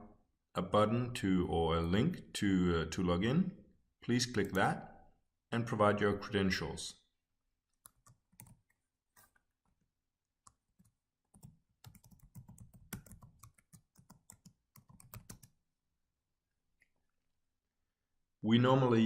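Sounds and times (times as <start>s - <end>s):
faint typing on a keyboard: 7.7s - 15.6s.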